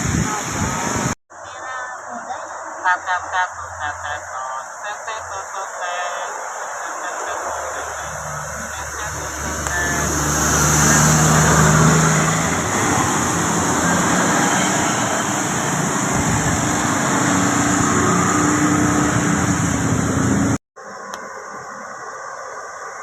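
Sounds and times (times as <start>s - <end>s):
bus passing by: 5.1s - 20.6s.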